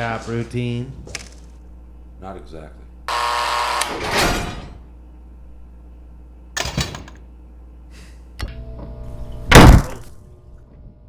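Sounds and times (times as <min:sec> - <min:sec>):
steady electric hum: 0:00.0 - 0:11.0
heavy slam onto a table: 0:09.5 - 0:10.1.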